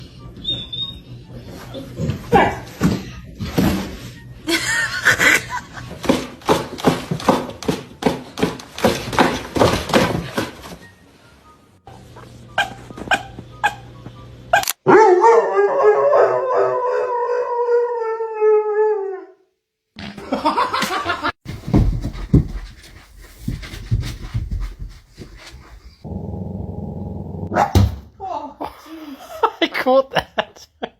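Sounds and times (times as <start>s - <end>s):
dogs yipping and woofing: 0.4s - 2.7s, 12.6s - 13.9s
dog howling: 14.9s - 19.4s.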